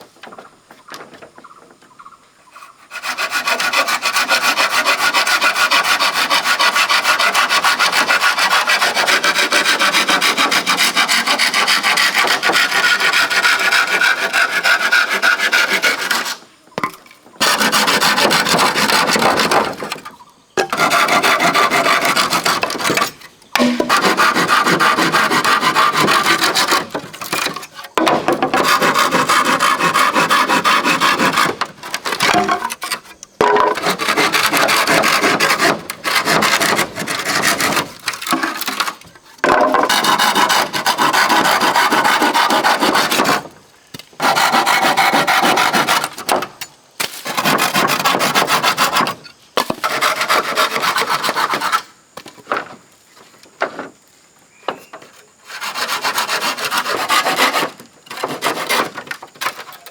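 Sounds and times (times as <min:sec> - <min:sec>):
hand tool rasping against wood: 0:02.6 - 0:43.5, 0:44.2 - 0:51.9, 0:55.4 - 0:59.8.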